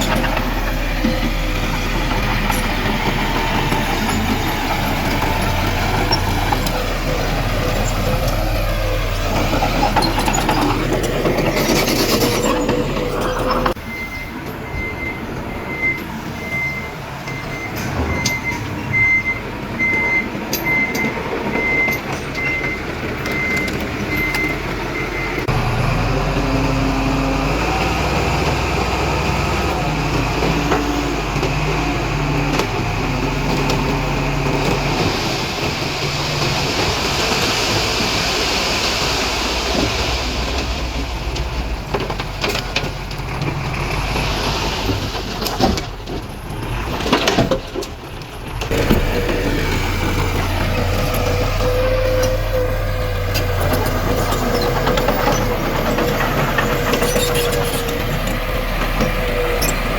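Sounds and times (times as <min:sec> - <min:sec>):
truck reversing alarm beeping: 0:00.0 - 0:40.7, 0:48.7 - 0:59.9
diesel engine running: 0:00.0 - 0:59.9
hissing rush: 0:34.8 - 0:41.8.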